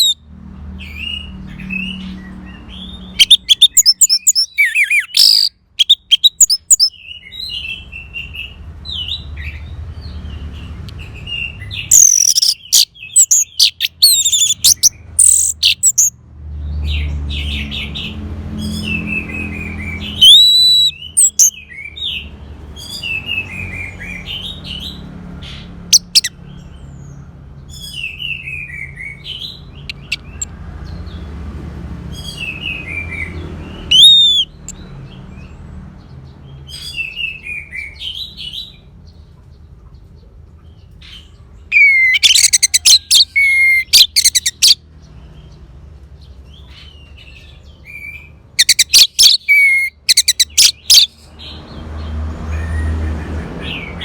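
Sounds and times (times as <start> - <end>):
rattling bird trill: 3.1 - 6.9, 11.8 - 16.1, 33.9 - 34.6, 41.7 - 44.8.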